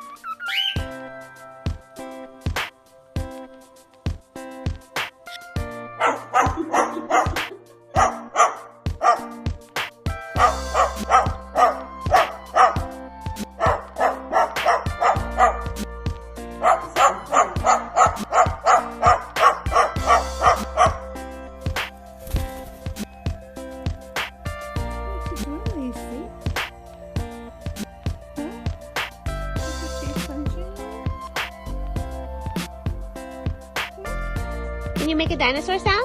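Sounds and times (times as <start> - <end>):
background music with steady beat: 0.0 - 36.0
dog barking in quick bursts: 6.0 - 9.4, 10.4 - 12.9, 13.5 - 15.8, 16.6 - 21.1.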